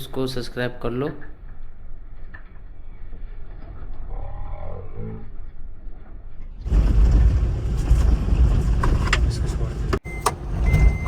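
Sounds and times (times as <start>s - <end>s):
vehicle engine rumble: 6.4s - 11.0s.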